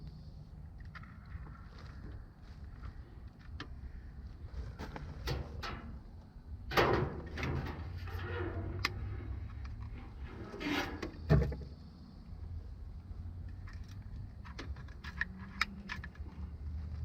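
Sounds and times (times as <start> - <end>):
steady low hum: 0.0 - 17.0
metal parts scraping and clunking: 4.6 - 11.7.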